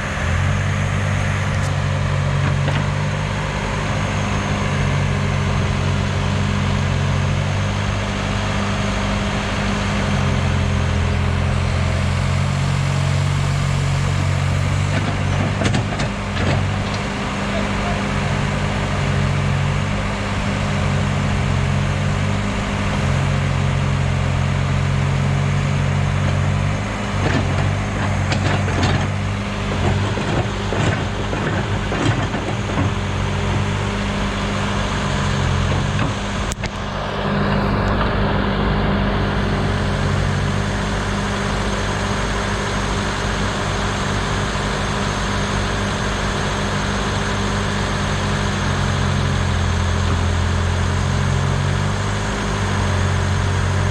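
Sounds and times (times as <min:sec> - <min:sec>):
diesel machinery engine running: 0:00.0 - 0:53.9
knocks and clanks: 0:14.7 - 0:18.1, 0:27.1 - 0:33.8.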